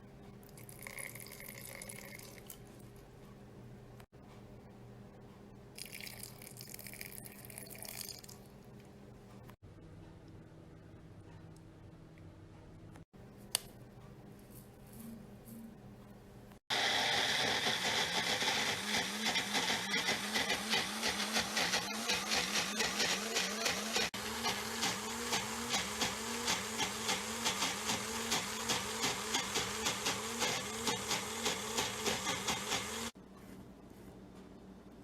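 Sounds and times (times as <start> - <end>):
electric blender churning thick mixture: 16.7 - 33.2.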